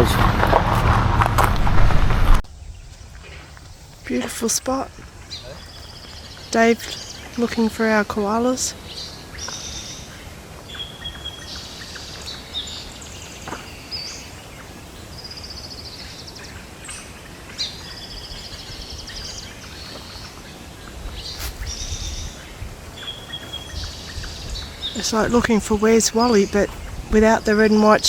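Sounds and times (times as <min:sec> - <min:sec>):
low rumble: 0:00.0 - 0:03.0
birds chirping and trilling: 0:02.5 - 0:28.0.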